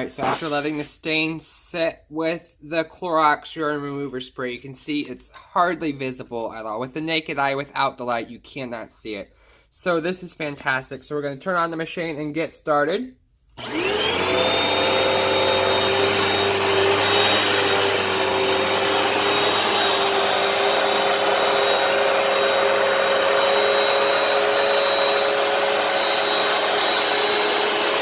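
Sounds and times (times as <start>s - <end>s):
carpet cleaner motor whine: 13.6s - 28.0s.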